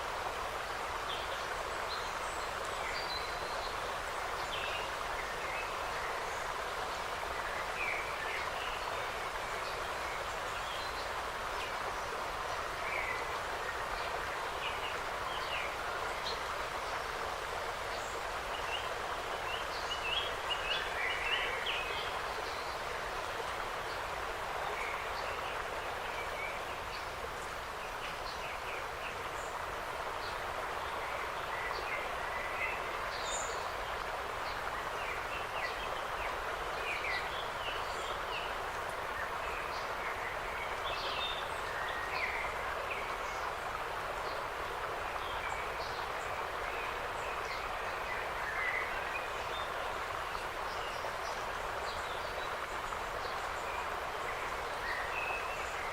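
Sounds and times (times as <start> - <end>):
wind in the trees: 0.0 - 55.9.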